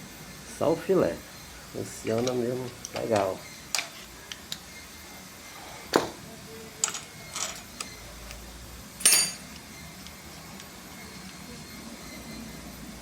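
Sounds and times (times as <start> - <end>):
metal tools clinking: 6.8 - 7.9, 9.0 - 9.6
ringing metallic clank: 9.0 - 9.5.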